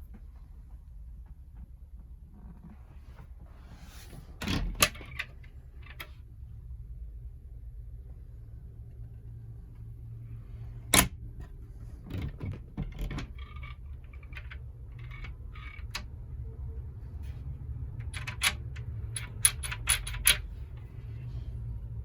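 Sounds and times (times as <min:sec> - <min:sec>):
steady low hum: 0:00.0 - 0:22.0
small clicks and clinks: 0:18.0 - 0:20.5.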